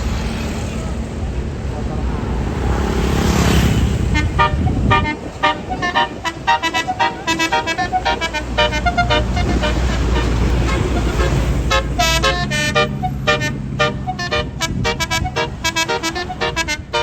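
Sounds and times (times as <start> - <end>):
bus engine rumbling: 0.0 - 17.0
bus horn playing melody: 4.0 - 17.0.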